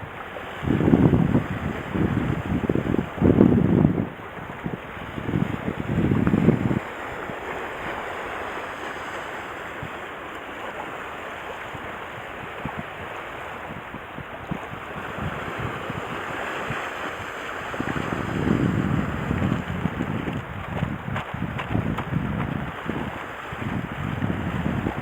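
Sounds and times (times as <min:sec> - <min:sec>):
rushing water: 0:00.0 - 0:25.0
wind buffeting microphone: 0:00.0 - 0:25.0.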